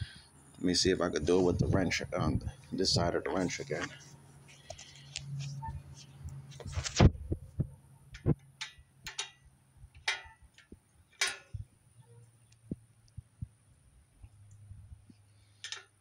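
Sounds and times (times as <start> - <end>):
ratcheting wrench clicking: 8.6 - 9.4, 10.0 - 11.6, 15.6 - 16.0.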